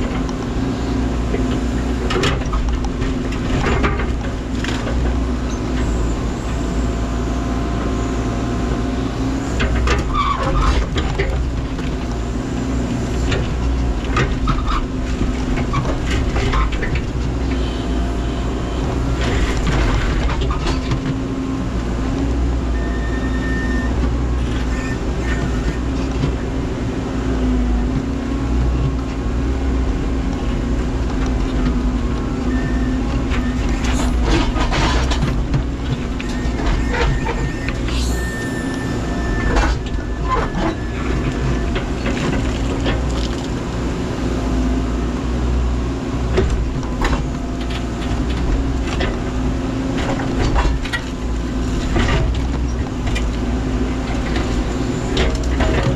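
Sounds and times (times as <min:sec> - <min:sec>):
diesel engine running: 0:00.0 - 0:55.9
short high squeals: 0:22.8 - 0:26.1, 0:32.4 - 0:34.6, 0:36.2 - 0:41.8.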